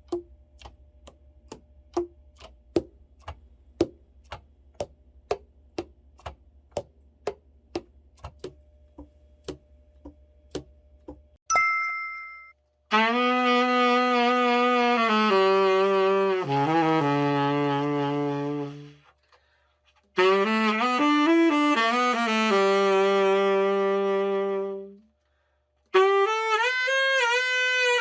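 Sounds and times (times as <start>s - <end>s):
ringing metallic chime: 11.5s - 12.6s
tenor saxophone long held notes: 12.9s - 19.2s, 20.1s - 25.1s, 25.9s - 28.0s.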